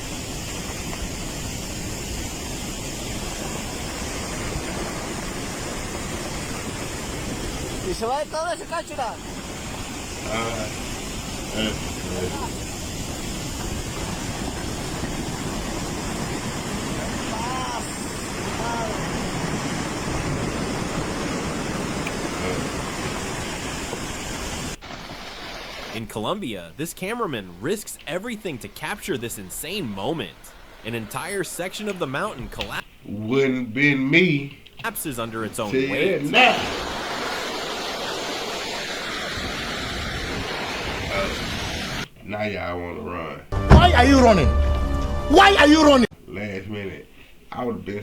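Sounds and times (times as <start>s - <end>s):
fast-moving water roaring: 0.0s - 26.2s, 27.6s - 32.8s, 34.8s - 42.1s
faint voice: 17.2s - 19.0s.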